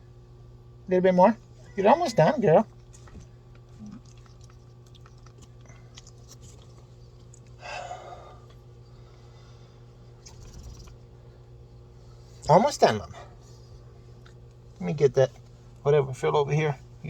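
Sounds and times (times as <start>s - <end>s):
pet chewing food: 1.7s - 7.6s, 10.2s - 11.2s.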